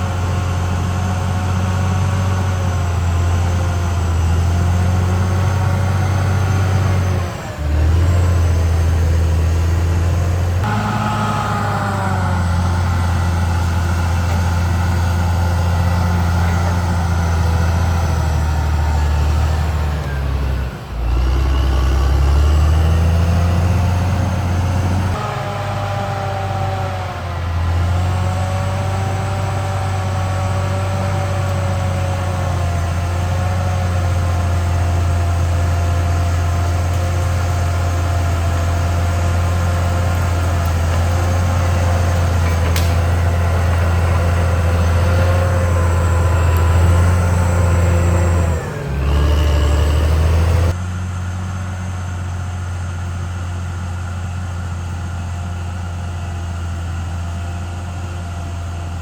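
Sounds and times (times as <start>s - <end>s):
bulldozer diesel engine running: 0.0s - 59.0s.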